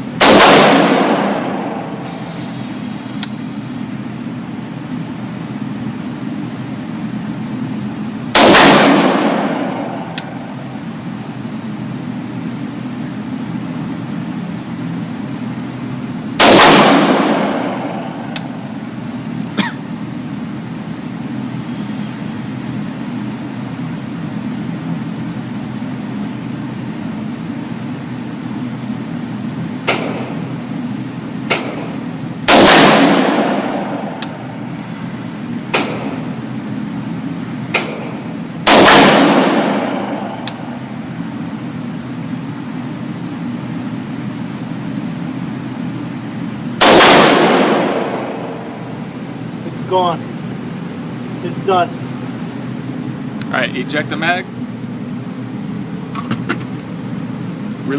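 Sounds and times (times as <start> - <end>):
steady low hum: 0.0 - 57.9
rifle shots with echo: 0.2 - 2.0, 8.4 - 10.6, 16.4 - 18.7, 29.9 - 30.4, 31.5 - 34.6, 35.7 - 36.3, 37.7 - 40.8, 46.8 - 49.1.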